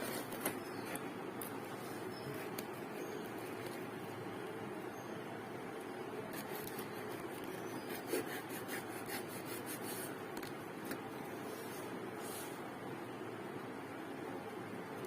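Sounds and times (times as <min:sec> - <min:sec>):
packaging scratching and scraping: 0:00.0 - 0:03.9.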